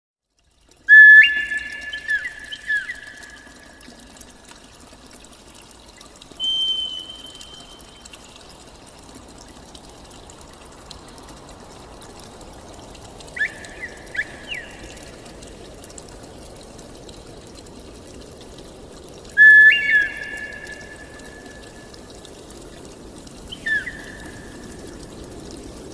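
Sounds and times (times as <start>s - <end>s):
water pouring and trickling: 0.2s - 25.9s
bird whistled calls: 0.9s - 3.4s, 6.4s - 7.8s, 13.4s - 14.9s, 19.4s - 21.5s, 23.5s - 24.5s.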